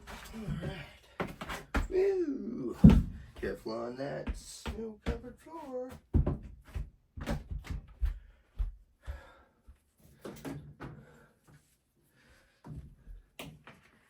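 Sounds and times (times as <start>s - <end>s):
dull thumps and knocks: 6.1s - 8.2s.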